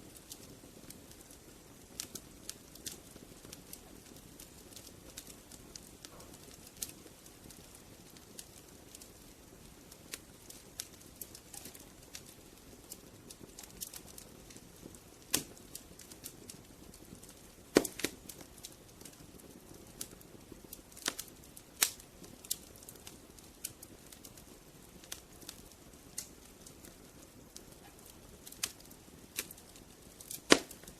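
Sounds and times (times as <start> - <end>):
wood fire crackling: 0.0 - 30.9.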